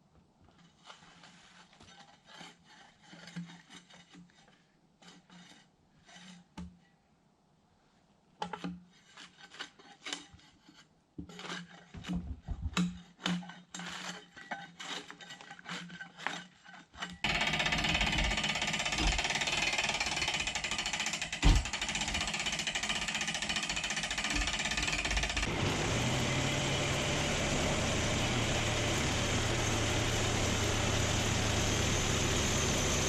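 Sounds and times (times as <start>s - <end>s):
hand tool rasping on wood: 13.0s - 33.0s
loud steady machine noise: 17.3s - 33.0s.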